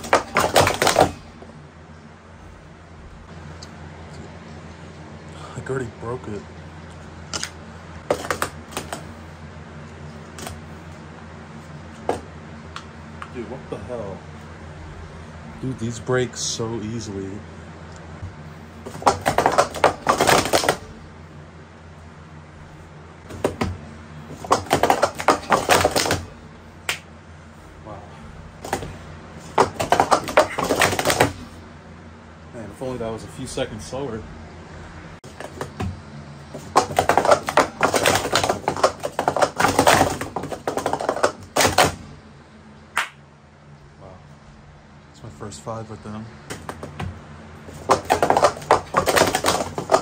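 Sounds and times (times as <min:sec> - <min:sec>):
stacking cups clattering: 0:00.0 - 0:01.2, 0:08.1 - 0:09.0, 0:18.9 - 0:20.9, 0:23.3 - 0:26.3, 0:28.6 - 0:31.4, 0:35.2 - 0:42.0, 0:47.7 - 0:50.0.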